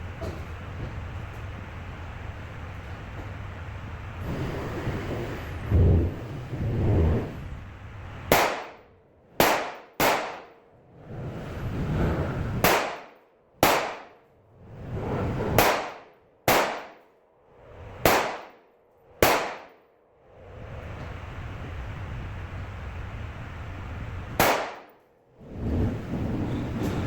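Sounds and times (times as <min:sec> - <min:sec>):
pistol gunshots with echo: 0:08.3 - 0:10.6, 0:12.6 - 0:14.2, 0:15.6 - 0:17.0, 0:18.0 - 0:18.6, 0:19.2 - 0:19.8, 0:24.4 - 0:24.9.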